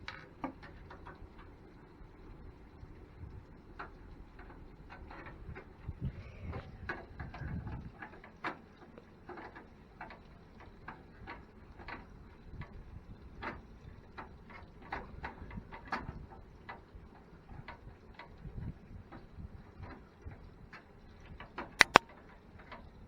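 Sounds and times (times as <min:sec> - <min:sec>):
screwdriver clicking on metal case: 0:21.8 - 0:22.0.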